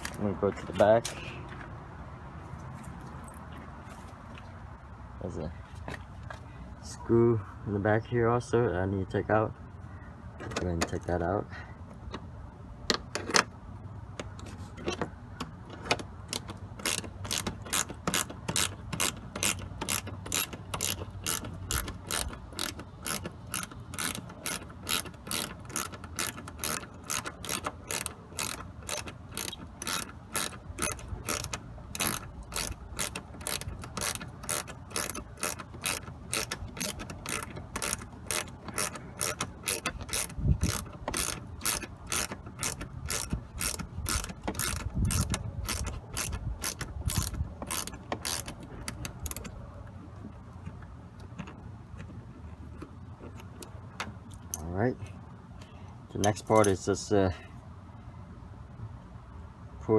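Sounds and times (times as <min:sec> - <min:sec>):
hand ratchet clicking: 0:15.4 - 0:49.5.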